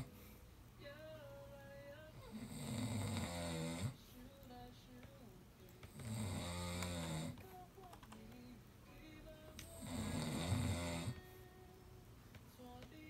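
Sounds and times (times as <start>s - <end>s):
person snoring: 2.1s - 4.0s, 5.9s - 7.4s, 9.7s - 11.2s.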